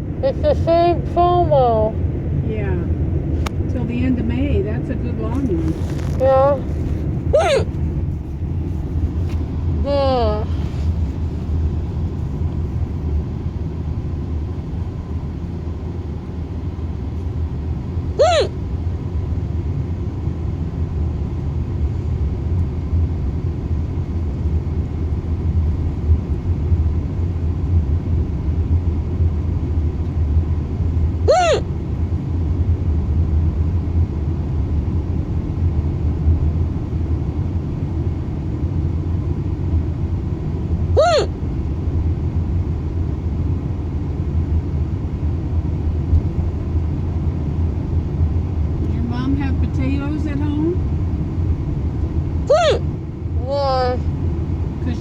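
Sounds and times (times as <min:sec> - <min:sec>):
road rumble inside moving car: 0:00.0 - 0:55.0
woman hiccupping: 0:07.4 - 0:07.8, 0:18.2 - 0:18.6, 0:31.3 - 0:31.7, 0:41.0 - 0:41.3, 0:52.5 - 0:52.8.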